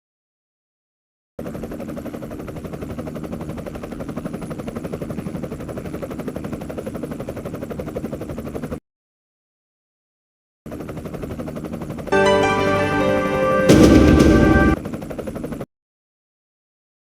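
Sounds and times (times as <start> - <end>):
helicopter rotor chopping: 1.4 - 8.8, 10.7 - 13.0, 13.6 - 15.6.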